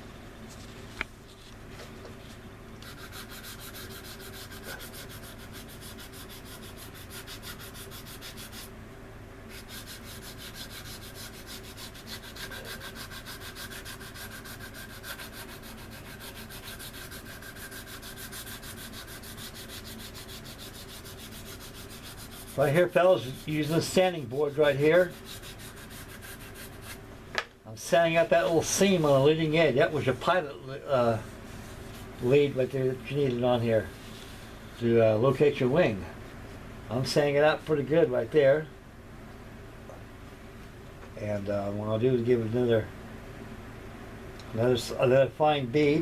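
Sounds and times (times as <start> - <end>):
sanding board rubbing: 2.8 - 8.7, 9.5 - 27.0.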